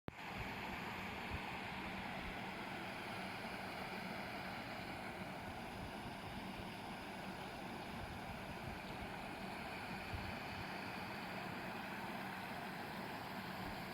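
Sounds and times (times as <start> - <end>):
river water rushing: 0.2 - 13.9.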